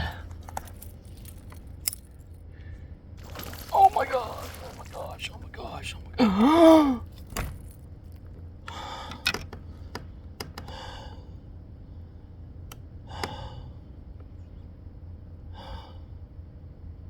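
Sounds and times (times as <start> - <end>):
steady low rumble: 0.0 - 17.0
man sighing and gasping: 6.1 - 7.1.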